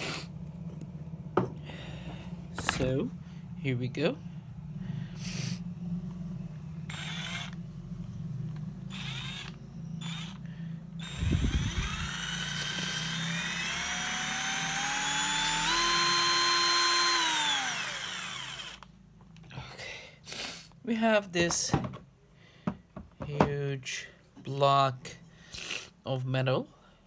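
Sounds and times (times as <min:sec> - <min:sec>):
cordless drill motor whine: 0:05.4 - 0:07.9, 0:08.5 - 0:18.9.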